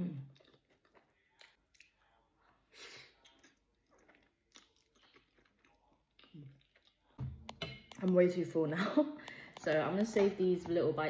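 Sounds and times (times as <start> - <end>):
close chewing with crunches: 0.0 - 8.2.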